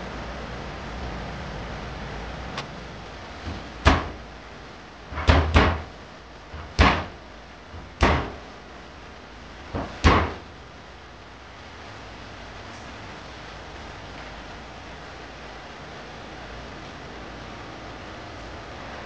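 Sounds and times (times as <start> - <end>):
sharp knocks: 3.4 - 4.2, 5.1 - 5.9, 6.5 - 7.2, 7.8 - 8.4, 9.7 - 10.4.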